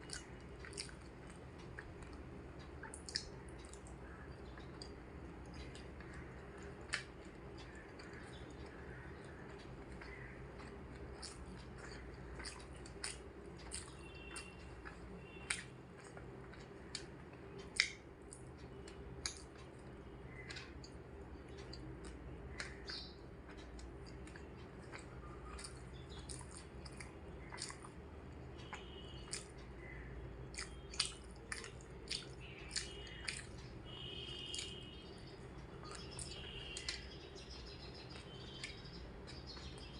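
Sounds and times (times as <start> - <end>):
wet chewing and mouth clicks: 0.0 - 39.9
faint bird chirps: 2.8 - 12.7, 13.6 - 15.8, 28.5 - 39.9.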